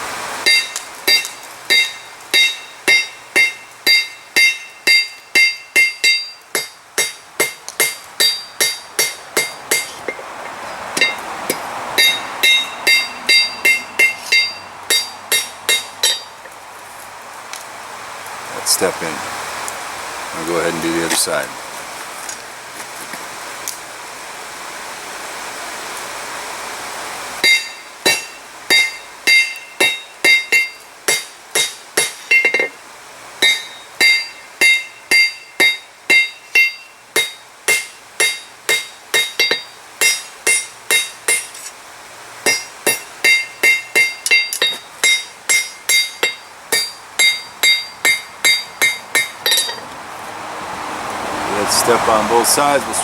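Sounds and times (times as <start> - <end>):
steady rushing noise: 0.0 - 53.0
hammer ringing on anvil: 0.5 - 10.2, 11.0 - 11.2, 12.0 - 16.3, 27.4 - 32.8, 33.4 - 41.6, 42.5 - 49.8.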